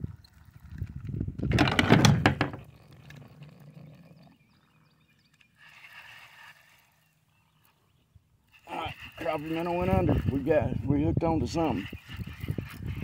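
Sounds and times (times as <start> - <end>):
gear knocking against kayak hull: 1.4 - 2.7.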